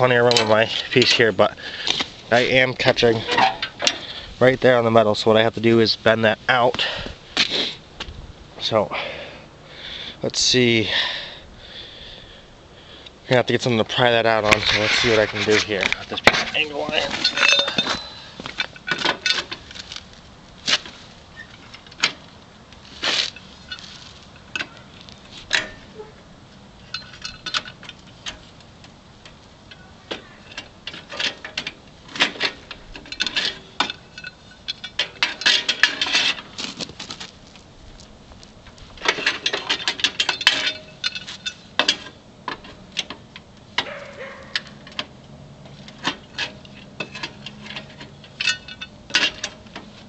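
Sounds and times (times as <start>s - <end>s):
angle iron clanking on steel: 0.0s - 5.0s, 14.3s - 20.0s, 23.0s - 28.6s, 29.2s - 36.9s, 39.0s - 50.0s.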